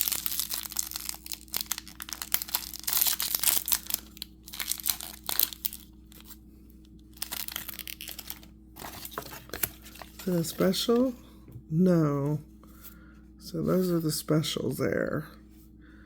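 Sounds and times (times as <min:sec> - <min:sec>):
plastic wrapper crackling: 0:00.0 - 0:06.4, 0:07.1 - 0:10.6.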